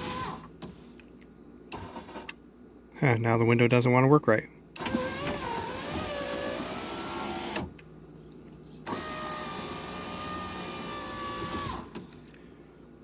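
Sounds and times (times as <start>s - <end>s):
power window motor whine: 0.0s - 0.5s, 4.8s - 7.7s, 8.9s - 12.1s
window motor clunk: 4.8s - 7.8s, 8.9s - 12.2s.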